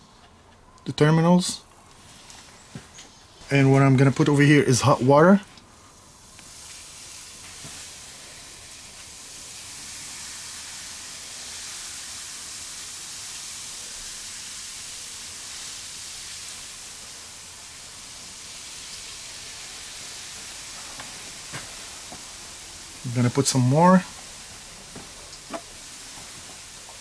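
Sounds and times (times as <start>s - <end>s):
baking soda fizzing hiss: 0.8s - 27.0s
water pouring: 6.4s - 27.0s.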